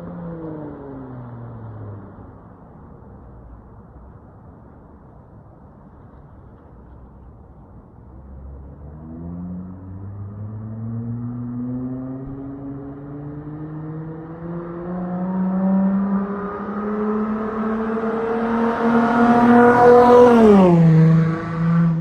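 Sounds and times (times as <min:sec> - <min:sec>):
car engine revving: 0:08.8 - 0:22.0.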